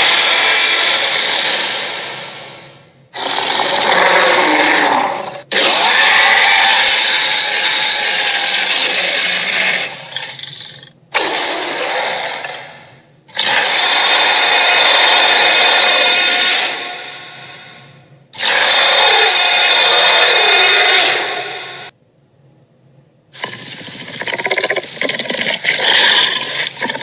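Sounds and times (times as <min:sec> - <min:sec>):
power tool sound effects: 0:18.4 - 0:21.8.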